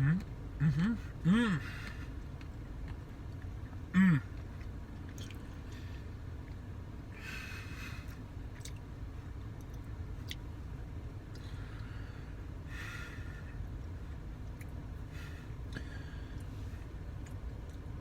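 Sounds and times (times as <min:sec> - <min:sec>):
steady low hum: 0:00.0 - 0:18.0
person chewing ice cream: 0:00.1 - 0:07.1, 0:08.0 - 0:12.6, 0:13.7 - 0:18.0
breathing: 0:01.6 - 0:02.2, 0:05.7 - 0:06.2, 0:07.2 - 0:08.2, 0:11.4 - 0:13.6, 0:15.1 - 0:16.9.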